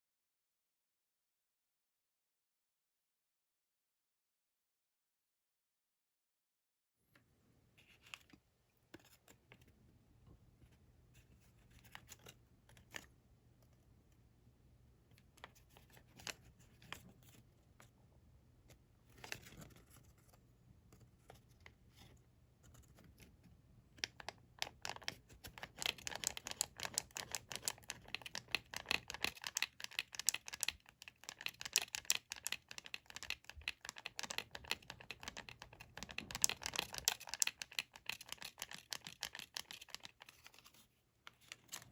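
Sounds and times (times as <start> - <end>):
paper crinkling and folding: 24.7 - 41.9.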